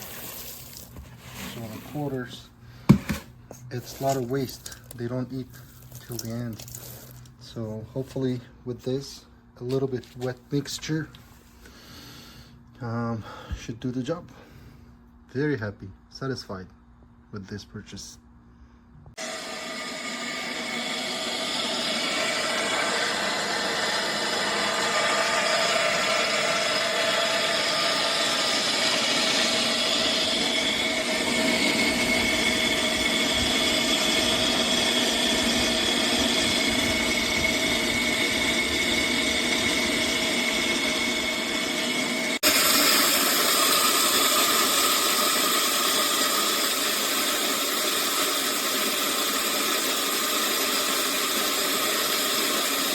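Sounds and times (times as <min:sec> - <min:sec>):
electric grain grinder running: 0:19.2 - 0:52.9.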